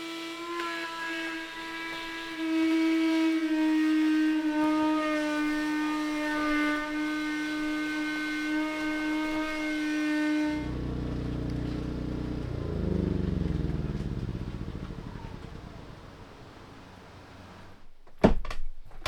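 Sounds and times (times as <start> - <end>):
vacuum motor whining: 0.0 - 17.8
deep engine hum: 8.5 - 17.8.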